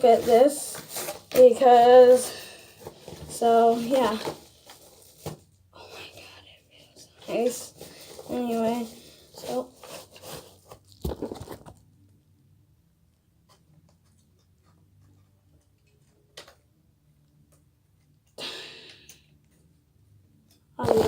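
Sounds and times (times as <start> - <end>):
scraping rustle: 7.3 - 11.7.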